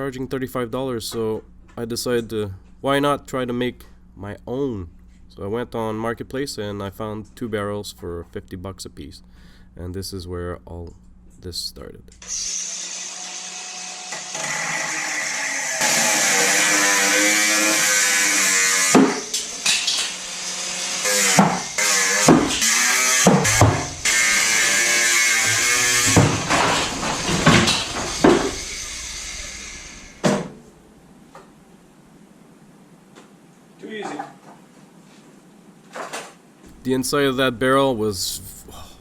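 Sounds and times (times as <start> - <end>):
power tool running under load: 12.2 - 30.5
sharp knocks: 18.9 - 19.9, 21.3 - 24.0, 25.4 - 28.6.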